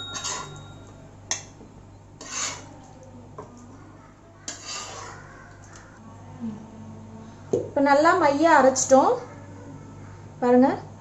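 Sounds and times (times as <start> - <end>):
utensil scraping a pan: 2.2 - 2.7, 4.4 - 5.3.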